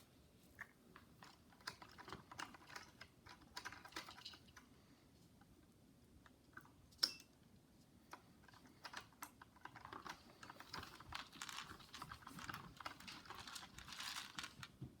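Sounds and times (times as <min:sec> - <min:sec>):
plastic parts and popcorn rattling: 0:00.6 - 0:04.6, 0:08.4 - 0:15.0.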